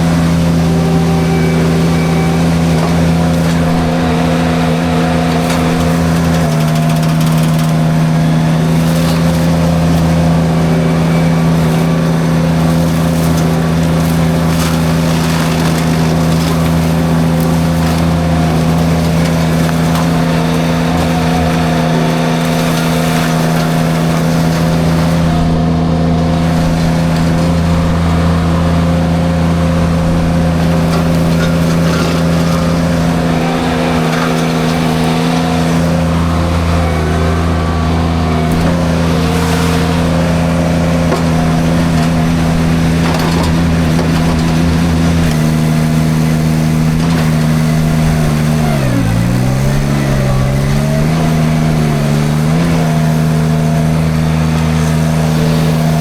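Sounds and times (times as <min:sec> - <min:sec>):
mini skid steer engine running hard: 0:00.0 - 0:56.0.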